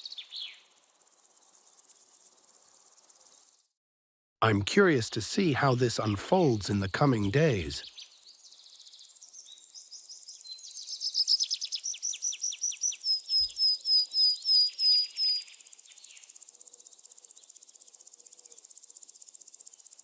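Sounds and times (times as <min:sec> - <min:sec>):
songbird singing: 0:00.0 - 0:00.6, 0:04.8 - 0:16.3.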